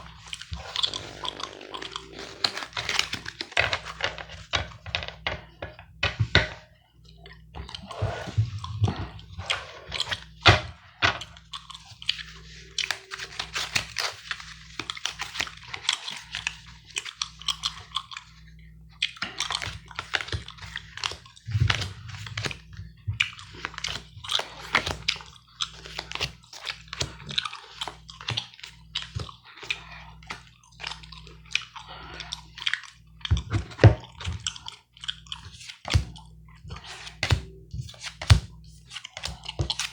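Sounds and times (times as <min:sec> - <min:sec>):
low hum: 0:00.0 - 0:11.2
playing cards being shuffled: 0:00.2 - 0:05.3, 0:35.4 - 0:39.9
gum chewing: 0:11.3 - 0:13.4, 0:15.8 - 0:36.3.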